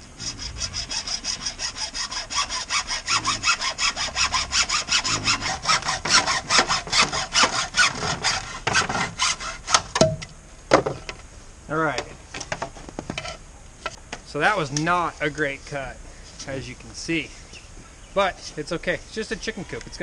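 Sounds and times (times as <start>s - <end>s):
hand saw cutting through tube: 0.1s - 9.9s
sharp knocks: 9.7s - 11.0s.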